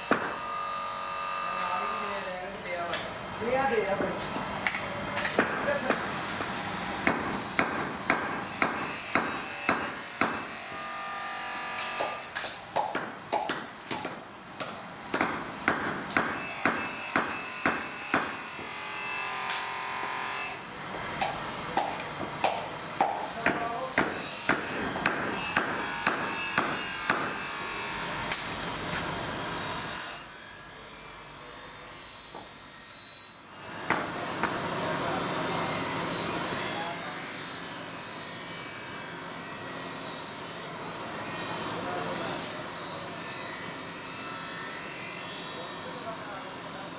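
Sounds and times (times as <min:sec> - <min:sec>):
hammer striking steel: 0:00.0 - 0:00.4, 0:04.7 - 0:10.6, 0:12.0 - 0:18.8, 0:21.2 - 0:27.4, 0:33.8 - 0:34.6
workshop noise: 0:00.0 - 0:46.9.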